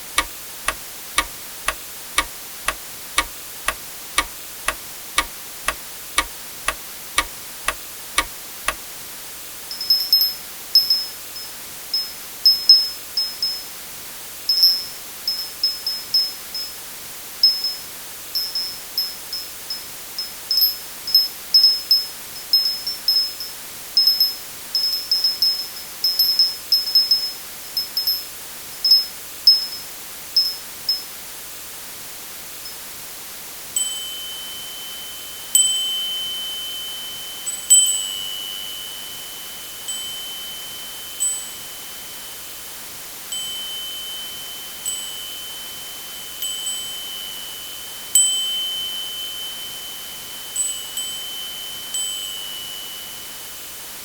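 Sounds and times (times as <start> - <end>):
small bells tinkling: 33.8 - 42.3, 43.3 - 53.4.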